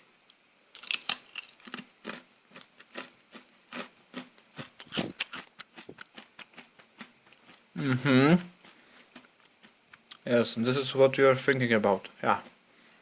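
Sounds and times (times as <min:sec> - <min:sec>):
person chewing crunchy food: 0:00.8 - 0:10.2.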